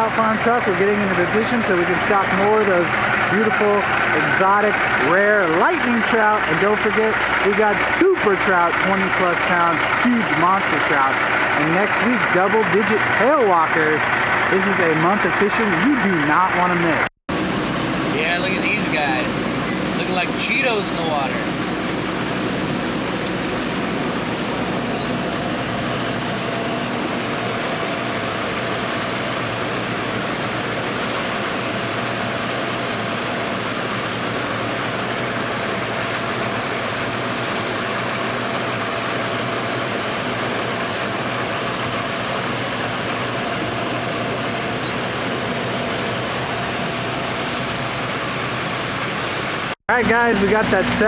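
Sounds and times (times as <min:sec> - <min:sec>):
water rushing from tube: 0:17.3 - 0:49.8
faint machinery hum: 0:17.3 - 0:51.0.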